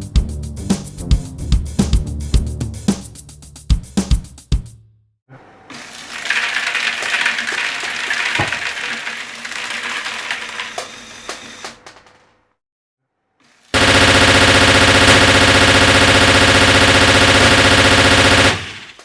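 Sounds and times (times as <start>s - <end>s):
music with drum beat: 0.0s - 4.9s.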